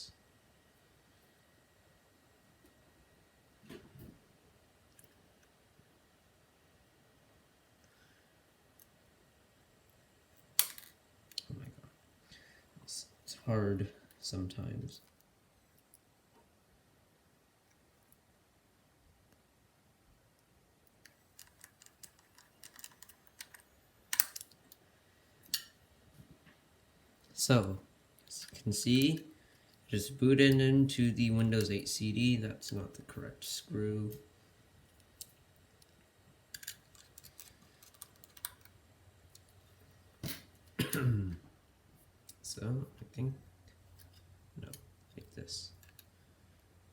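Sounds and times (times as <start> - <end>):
small screws clicking and tapping: 20.9 - 24.8, 35.0 - 39.5
hard plastic parts clicking: 21.0 - 24.6.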